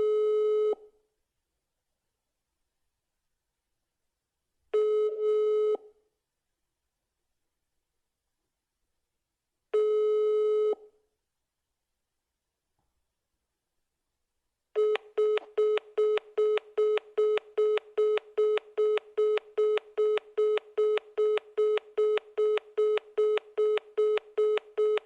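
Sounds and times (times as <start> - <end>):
phone calling beeps: 14.8 - 25.0.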